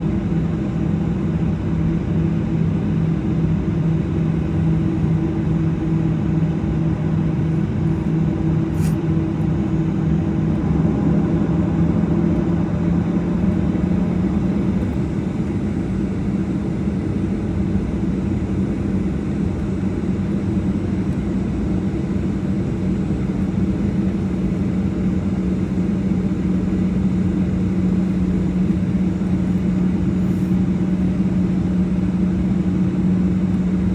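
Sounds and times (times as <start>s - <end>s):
jet engines droning: 0.0s - 33.9s.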